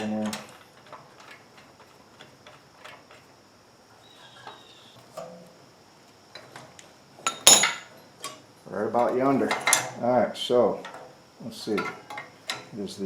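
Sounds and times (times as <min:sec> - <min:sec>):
metal clatter: 0:07.3 - 0:07.9.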